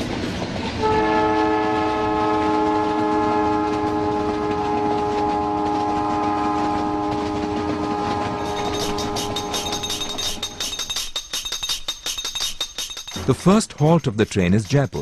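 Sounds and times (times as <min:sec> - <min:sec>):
moving train rumble: 0:00.0 - 0:15.0
train horn blast: 0:00.8 - 0:10.0
glasses and tableware clinking: 0:08.4 - 0:15.0.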